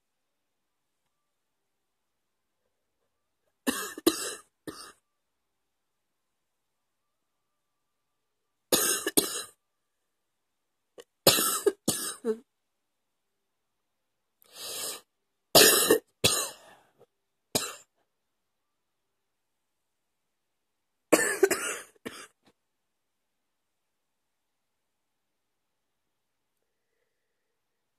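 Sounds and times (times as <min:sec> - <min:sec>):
woman coughing: 0:03.7 - 0:05.0, 0:11.3 - 0:12.5, 0:15.6 - 0:16.6, 0:21.1 - 0:22.4
soft breathy sound: 0:26.5 - 0:27.9.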